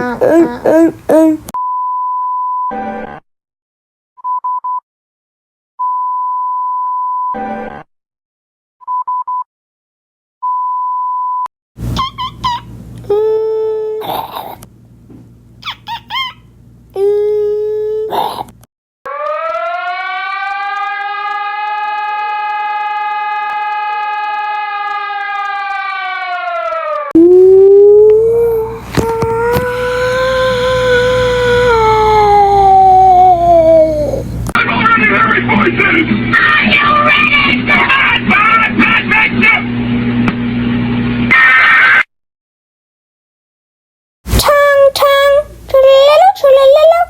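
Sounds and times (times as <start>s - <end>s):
person imitating a siren: 0.0s - 1.5s, 19.1s - 34.4s.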